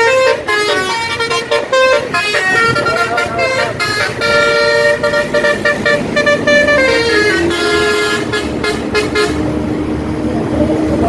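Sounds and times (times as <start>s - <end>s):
musical bus air horn: 0.0s - 9.6s.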